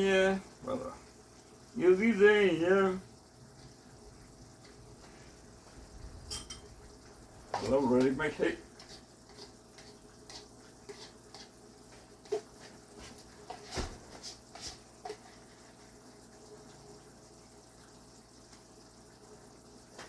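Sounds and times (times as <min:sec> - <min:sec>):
kitchen utensils clicking: 0:06.3 - 0:06.7.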